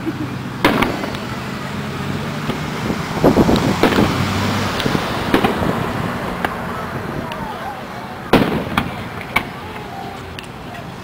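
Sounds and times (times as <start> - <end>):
vehicle engine humming: 0.0 - 11.0
fireworks bangs: 0.6 - 1.5, 3.4 - 7.6, 8.2 - 9.8.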